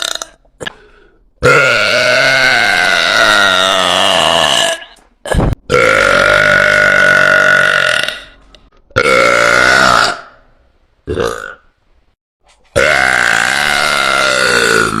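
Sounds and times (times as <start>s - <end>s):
woman burping loudly: 0.0s - 0.7s, 1.4s - 8.4s, 9.0s - 10.4s, 11.1s - 11.7s, 12.8s - 15.0s.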